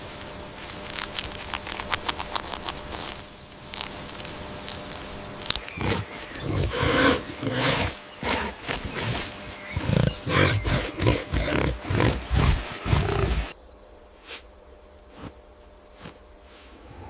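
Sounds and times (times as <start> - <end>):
animal growling calls: 5.5 - 13.5.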